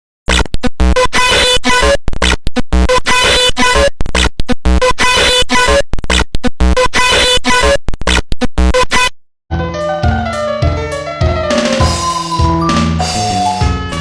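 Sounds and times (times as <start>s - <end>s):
distorted electronic alarm tone: 0.3s - 9.1s.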